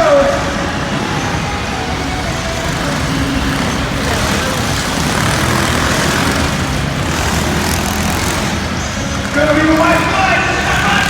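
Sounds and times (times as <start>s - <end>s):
mini bike engine running hard: 0.0s - 11.0s.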